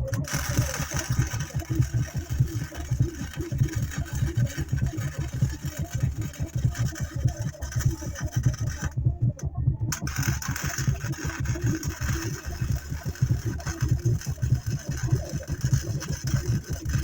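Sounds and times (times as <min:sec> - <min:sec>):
welding arc crackling and hissing: 0:00.0 - 0:09.0, 0:09.9 - 0:17.0
low pulsing rumble: 0:00.0 - 0:17.0.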